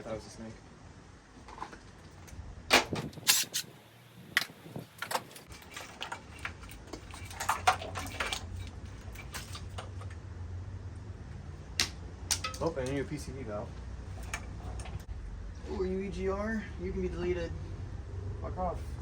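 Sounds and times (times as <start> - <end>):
hand tools knocking and clicking: 11.8 - 13.0.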